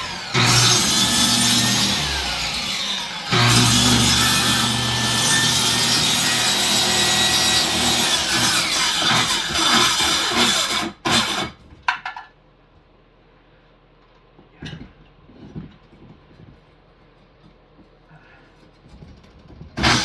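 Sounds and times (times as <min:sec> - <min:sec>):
power saw cutting wood: 0:00.0 - 0:11.5, 0:19.8 - 0:20.0.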